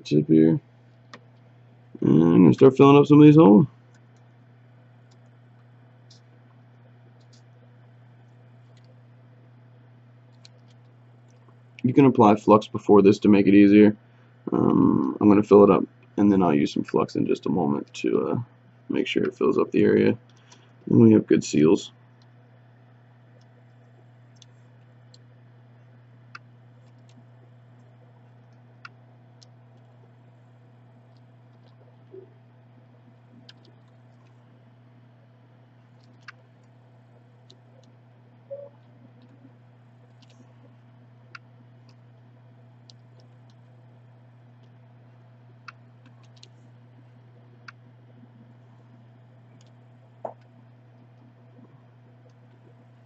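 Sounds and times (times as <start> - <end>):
low electrical hum: 0.0 - 53.0
soldering clicks and ticks: 0.9 - 1.7, 3.9 - 9.3, 10.2 - 11.9, 23.2 - 32.2, 32.8 - 53.0.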